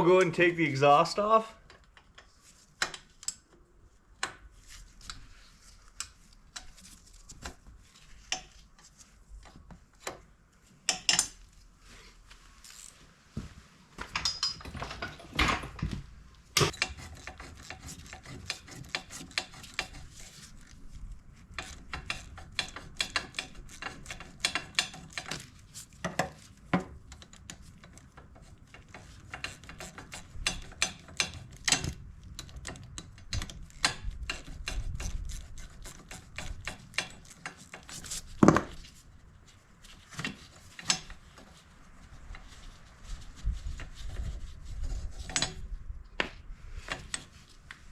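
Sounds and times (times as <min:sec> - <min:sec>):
metal clinks and knocks: 0:14.0 - 0:16.0.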